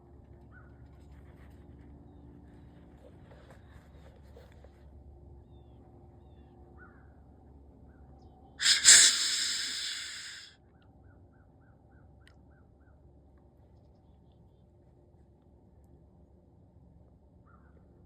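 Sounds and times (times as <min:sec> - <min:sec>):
deer snort-wheeze: 0:08.6 - 0:10.5.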